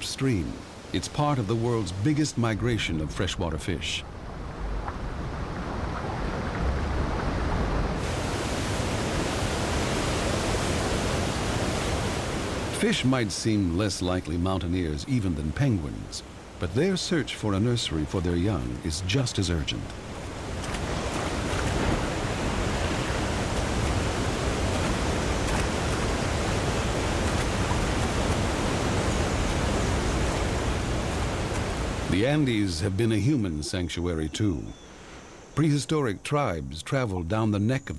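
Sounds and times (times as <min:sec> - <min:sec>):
river water rushing over rapids: 0:06.8 - 0:32.3.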